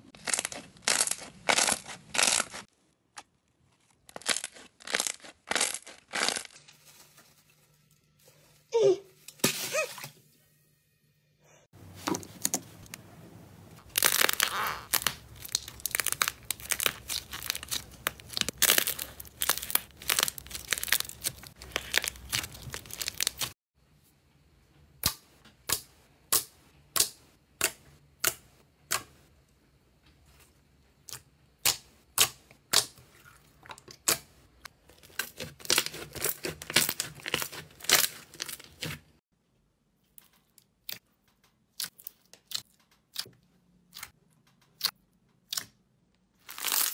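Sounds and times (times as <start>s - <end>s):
slime crackling and popping: 0.2s - 2.6s, 4.1s - 6.6s, 13.8s - 23.6s, 35.0s - 39.0s, 46.4s - 46.9s.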